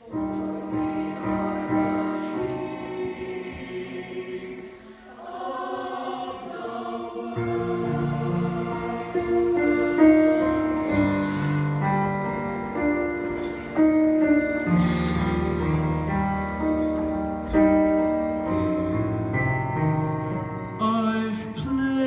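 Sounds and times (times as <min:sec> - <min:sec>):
piano chords: 0:00.0 - 0:22.0.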